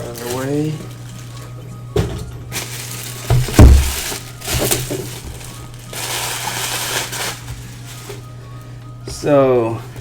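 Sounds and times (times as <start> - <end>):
cardboard box knocks: 3.3 - 4.7.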